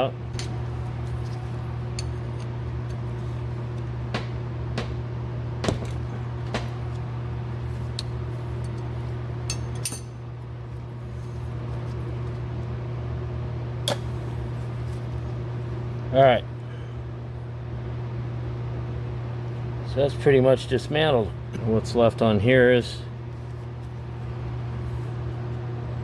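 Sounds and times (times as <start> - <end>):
metal parts and tools clicking: 9.5 - 10.2.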